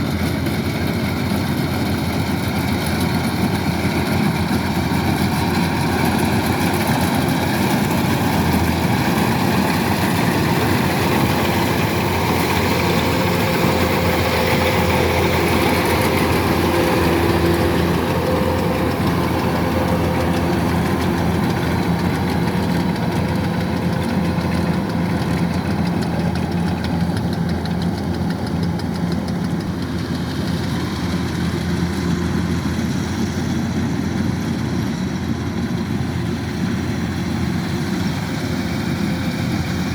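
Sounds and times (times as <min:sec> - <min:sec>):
machinery clatter: 0:00.0 - 0:33.4
combine harvester engine hum: 0:00.0 - 0:39.9.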